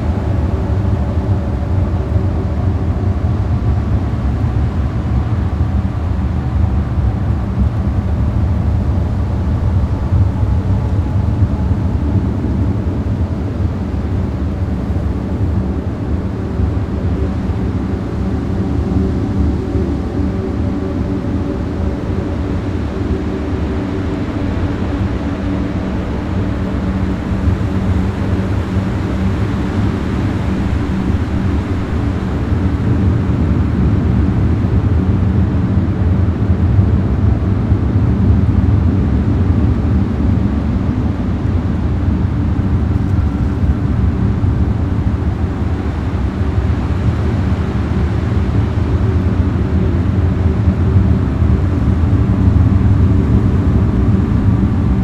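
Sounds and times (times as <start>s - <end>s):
low rumbling drone: 0.0s - 55.0s
noisy hiss: 41.3s - 55.0s.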